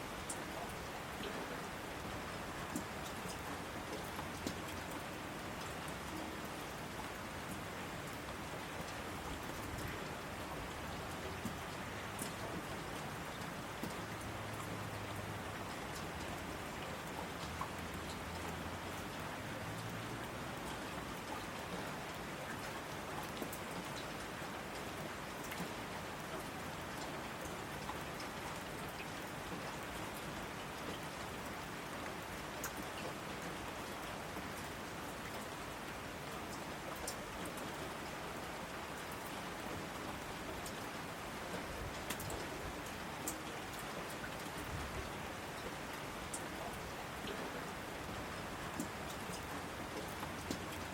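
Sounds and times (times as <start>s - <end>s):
raindrops ticking on a surface: 0.0s - 50.9s
steady rainfall: 0.0s - 50.9s.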